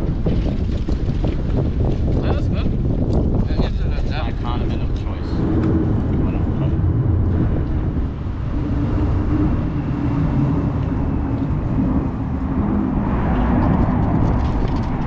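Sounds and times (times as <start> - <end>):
wind buffeting microphone: 0.0 - 15.0
road traffic: 4.3 - 15.0.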